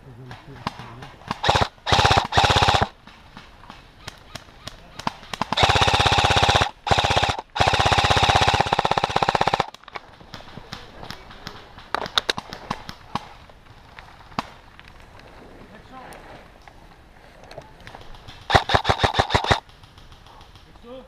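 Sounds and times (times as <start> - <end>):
airsoft rifle firing bursts: 0.6 - 3.1, 5.0 - 13.3, 18.0 - 20.7.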